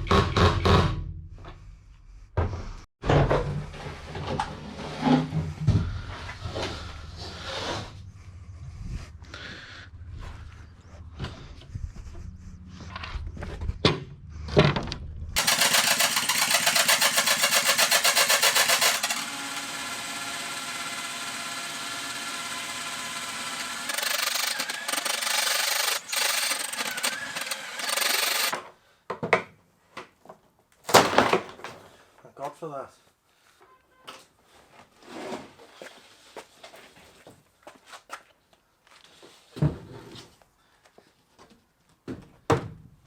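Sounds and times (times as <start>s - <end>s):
cordless drill whining: 15.4s - 28.6s
handling knocks and clatter: 30.3s - 32.1s.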